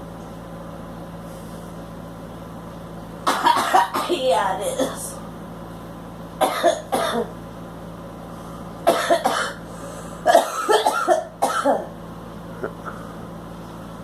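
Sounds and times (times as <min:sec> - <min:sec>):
girl coughing: 0:03.3 - 0:05.2, 0:06.4 - 0:07.4, 0:08.8 - 0:09.6, 0:10.2 - 0:12.0.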